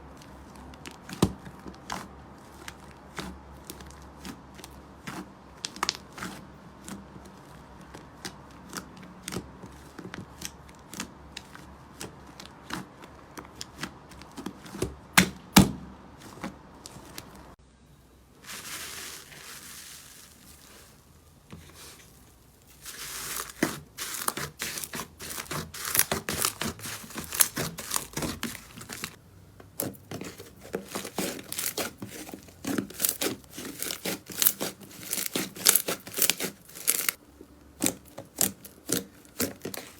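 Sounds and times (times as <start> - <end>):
slime popping and crackling: 22.4 - 29.2, 29.8 - 37.2, 37.8 - 39.9.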